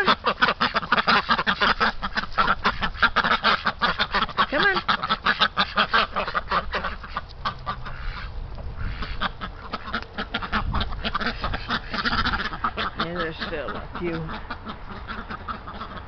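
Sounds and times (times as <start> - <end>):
ducks quacking: 0.0 - 16.0
wind rumbling on microphone: 7.4 - 12.8.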